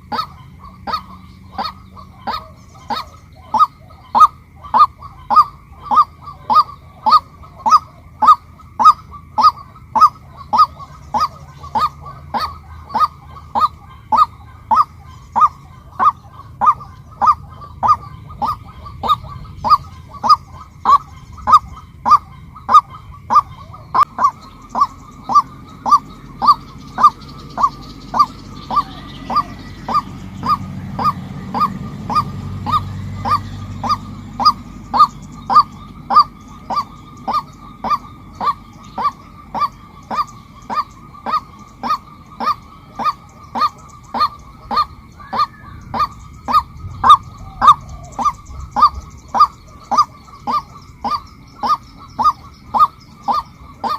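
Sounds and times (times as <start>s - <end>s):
waterhen honking call: 0.0s - 53.9s.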